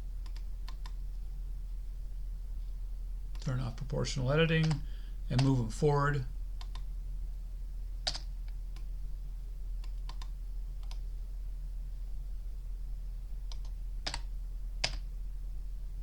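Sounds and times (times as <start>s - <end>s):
steady low hum: 0.0s - 16.0s
computer keys and mouse clicks: 0.2s - 1.0s, 4.6s - 5.5s, 6.6s - 6.9s, 8.0s - 8.9s, 9.8s - 11.0s, 13.5s - 15.0s.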